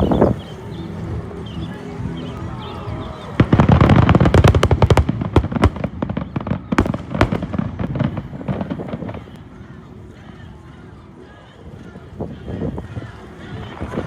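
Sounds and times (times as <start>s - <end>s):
fireworks crackling bursts: 0.0s - 14.0s
fireworks loud bangs: 3.4s - 9.8s.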